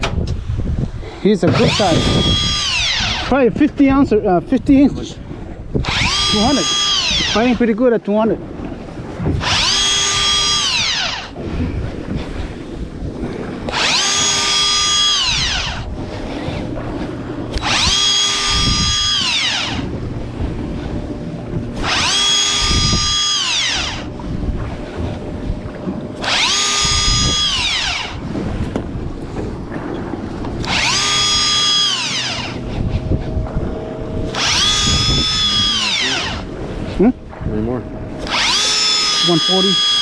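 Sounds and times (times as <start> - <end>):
electric reel motor whining: 1.5 - 3.6, 5.7 - 7.7, 9.4 - 11.6, 13.4 - 28.4, 30.3 - 37.0, 38.1 - 40.0.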